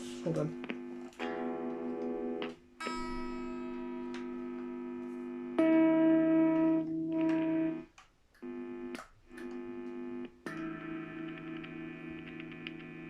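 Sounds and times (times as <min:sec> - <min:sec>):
electric guitar chord: 0:00.0 - 0:07.9, 0:09.4 - 0:13.0
crackling clicks: 0:00.3 - 0:02.6, 0:04.1 - 0:13.0.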